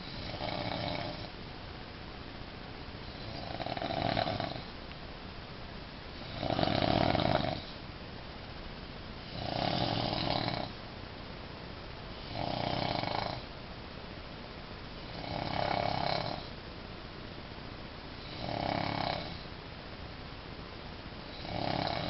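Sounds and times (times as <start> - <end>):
person snoring: 0.0 - 1.3, 3.1 - 4.7, 6.2 - 7.8, 9.3 - 10.8, 12.2 - 13.5, 15.1 - 16.5, 18.2 - 19.4, 21.3 - 22.0.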